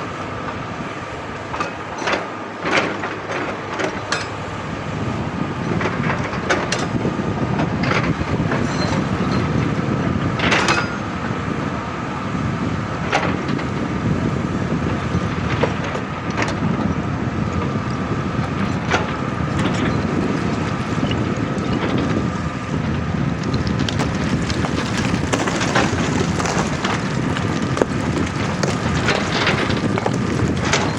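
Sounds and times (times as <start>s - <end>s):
excavator engine running: 23.8s - 30.9s.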